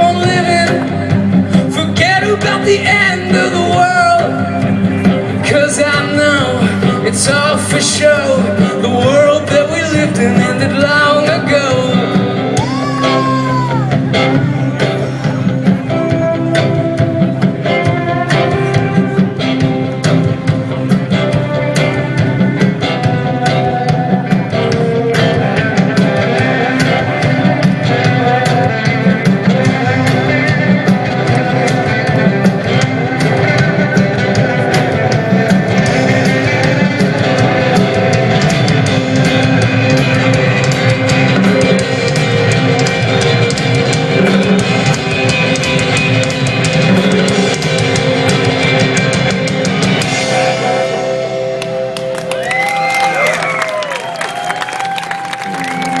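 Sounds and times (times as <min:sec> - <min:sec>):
drum kit: 0:00.0 - 0:56.0
guitar: 0:00.0 - 0:56.0
rock band playing: 0:00.0 - 0:56.0.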